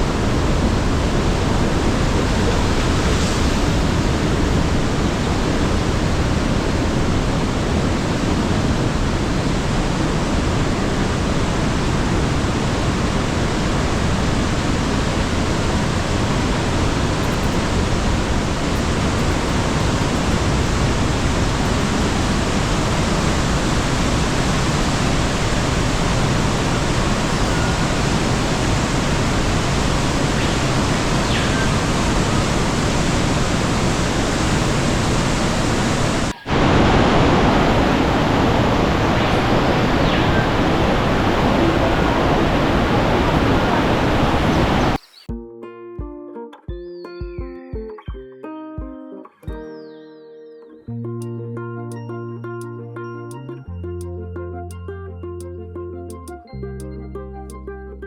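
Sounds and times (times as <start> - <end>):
white water rushing through gorge: 0.0 - 45.0.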